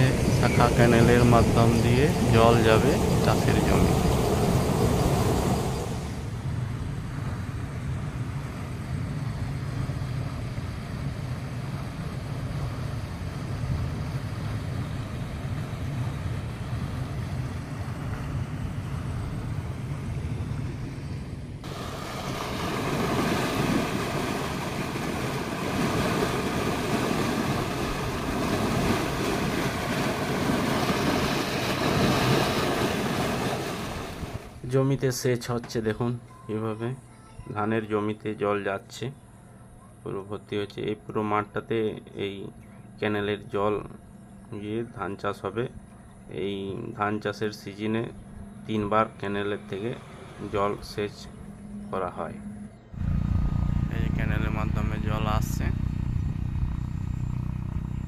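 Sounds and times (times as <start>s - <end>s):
canal water flowing: 0.0s - 34.6s
wind rumbling on microphone: 0.0s - 34.6s, 53.0s - 58.0s.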